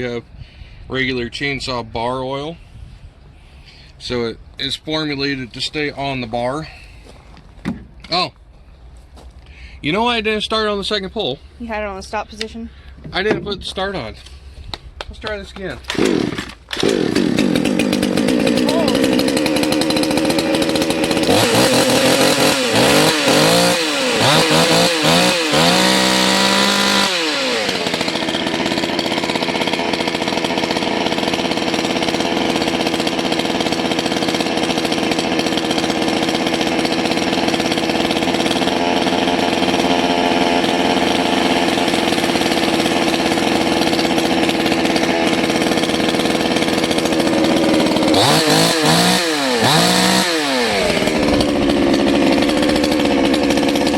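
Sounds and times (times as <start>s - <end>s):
chainsaw revving and idling: 15.2s - 53.9s.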